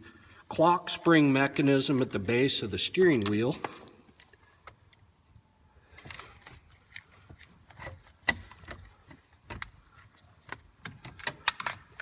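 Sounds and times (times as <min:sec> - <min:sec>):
hand tools clicking on plastic: 0:06.0 - 0:12.0.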